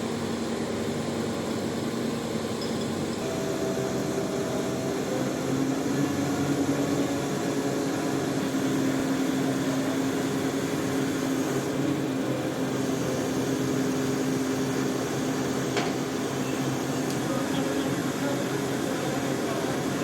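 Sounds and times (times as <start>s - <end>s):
heavy machinery engine humming: 0.0s - 20.0s.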